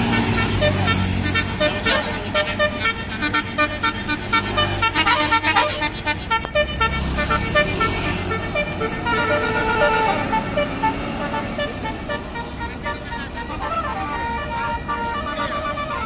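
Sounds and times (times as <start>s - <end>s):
bus engine running: 0.0s - 16.0s
multi-note bus horn melody: 0.0s - 16.0s.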